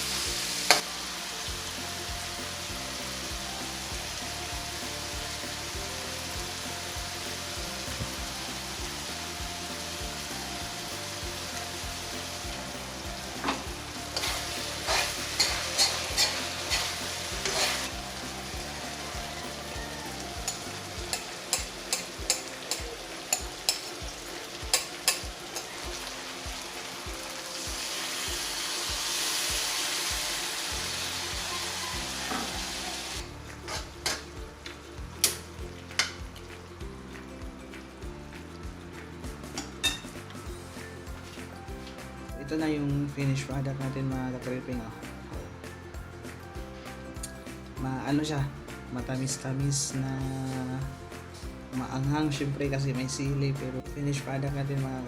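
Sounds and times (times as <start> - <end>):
chicken sizzling in a pan: 0.0 - 37.8, 49.3 - 53.2
spatula scraping a pan: 13.5 - 18.0, 32.2 - 34.2.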